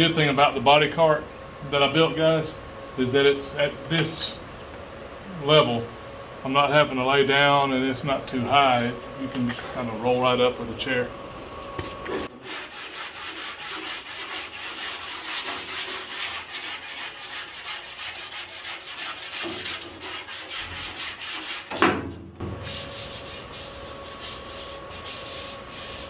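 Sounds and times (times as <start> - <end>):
sanding block scraping metal: 12.2 - 21.8, 22.6 - 26.0.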